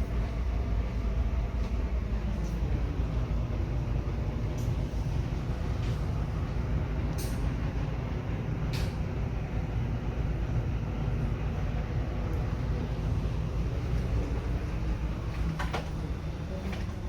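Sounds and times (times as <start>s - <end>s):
low store rumble: 0.0s - 17.0s.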